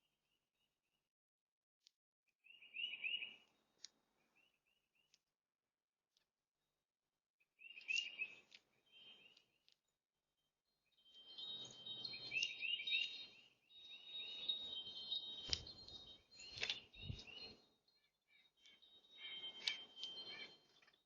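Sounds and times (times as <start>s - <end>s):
songbirds chirping: 2.3s - 5.5s, 7.4s - 21.0s.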